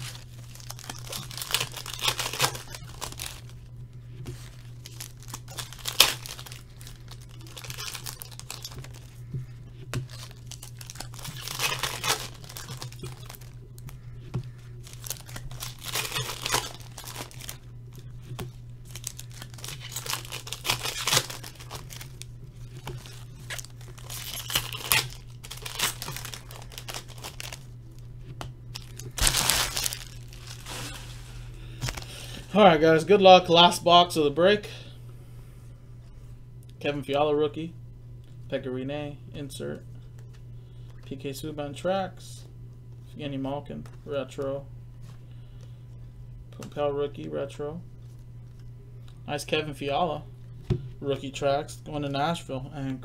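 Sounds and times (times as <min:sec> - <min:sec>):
card pack wrappers tearing and crinkling: 0:00.0 - 0:03.7, 0:04.3 - 0:09.2, 0:09.9 - 0:17.6, 0:18.3 - 0:28.1, 0:28.7 - 0:32.5
steady low hum: 0:00.0 - 0:53.0.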